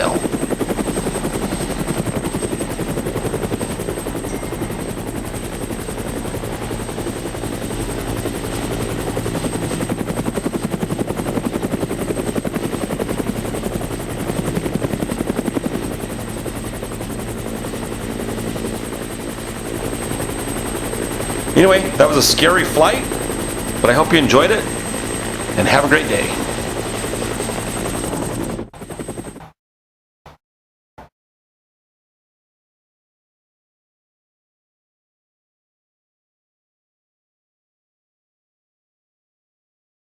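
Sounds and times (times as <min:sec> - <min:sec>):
helicopter rotor chop: 0:00.0 - 0:29.6.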